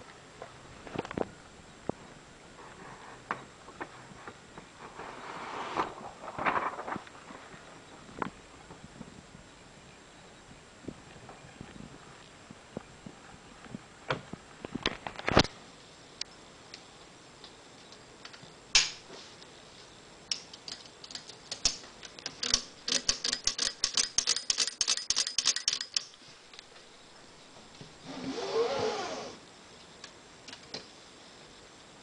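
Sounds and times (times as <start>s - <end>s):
typewriter keystroke clacks: 20.3s - 26.1s
typewriter carriage sliding: 21.2s - 26.1s.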